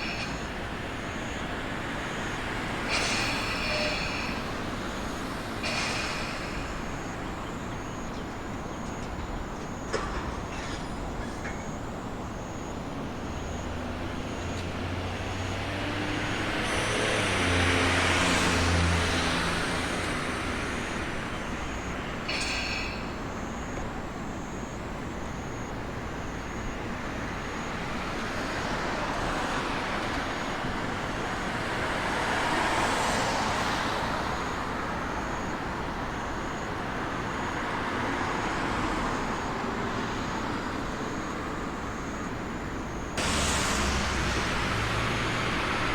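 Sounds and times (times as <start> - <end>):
vehicles passing: 12.7 - 24.6, 27.3 - 45.9.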